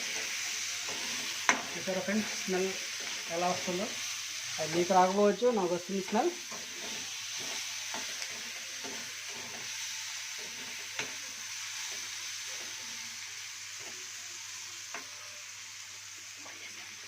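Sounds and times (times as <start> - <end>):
curry sizzling in oil: 0.0 - 17.0
spatula tapping pan: 0.8 - 1.8.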